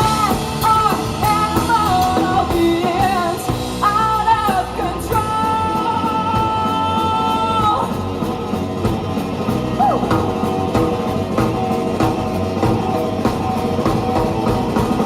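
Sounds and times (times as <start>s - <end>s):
rock band playing: 0.0s - 15.0s
person yelling woo: 9.8s - 10.2s.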